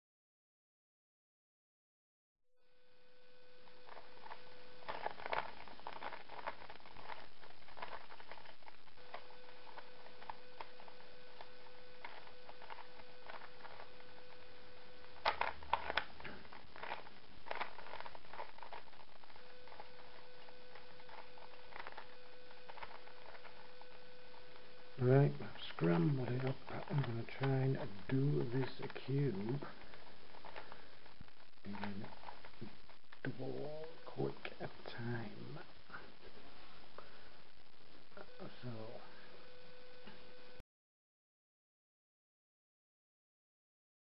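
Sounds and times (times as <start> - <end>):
faint steady hum: 2.6 - 40.6
puzzle cube clicking as twisted: 3.9 - 13.9, 15.2 - 19.0, 19.7 - 23.7, 25.6 - 30.8, 31.7 - 32.5.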